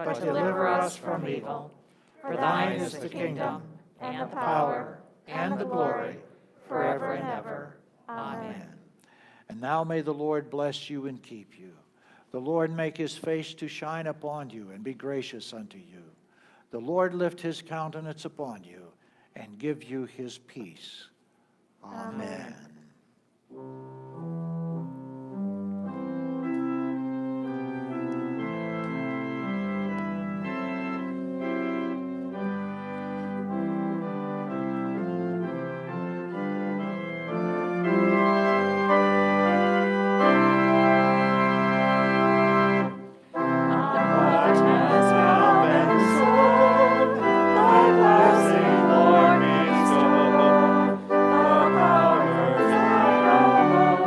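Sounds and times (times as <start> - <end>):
organ playing chords: 0.0 - 1.6, 2.3 - 7.6, 23.5 - 54.0.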